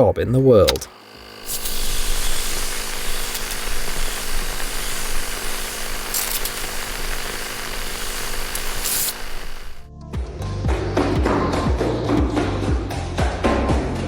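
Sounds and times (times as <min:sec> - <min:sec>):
motor hum: 0:00.3 - 0:09.9
machine hissing: 0:00.6 - 0:09.9.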